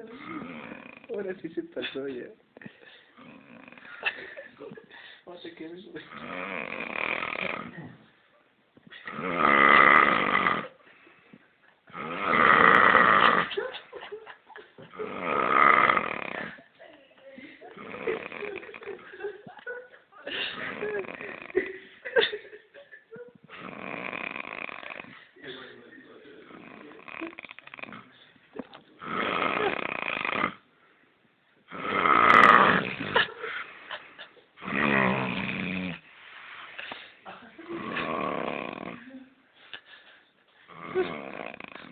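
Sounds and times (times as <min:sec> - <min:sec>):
man snoring loudly: 0:00.0 - 0:01.2, 0:06.1 - 0:07.9, 0:09.0 - 0:10.8, 0:11.9 - 0:13.5, 0:14.9 - 0:16.6, 0:17.7 - 0:19.0, 0:20.5 - 0:21.6, 0:23.6 - 0:25.2, 0:26.4 - 0:28.1, 0:29.0 - 0:30.6, 0:31.7 - 0:33.3, 0:34.6 - 0:36.0, 0:37.6 - 0:39.0, 0:40.7 - 0:41.9.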